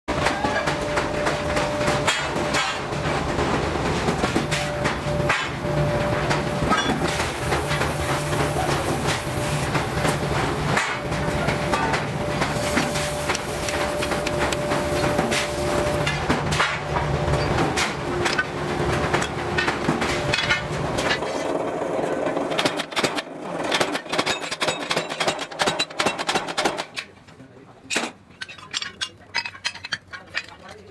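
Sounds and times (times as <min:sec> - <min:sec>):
steady machine hum: 0:00.1 - 0:23.6.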